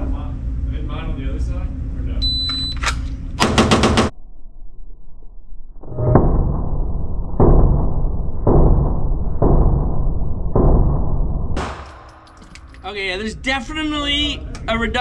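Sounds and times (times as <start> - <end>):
deep drawn-out booms: 3.5 - 12.3
pistol shots: 11.6 - 12.4.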